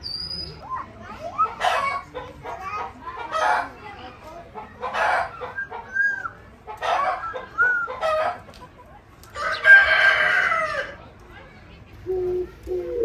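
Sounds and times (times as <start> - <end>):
chickens clucking: 4.5 - 10.7, 12.1 - 13.0.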